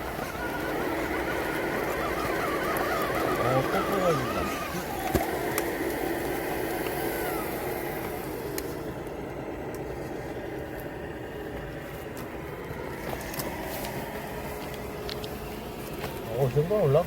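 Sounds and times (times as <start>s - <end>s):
electric motor and gear whine: 0.0s - 17.0s.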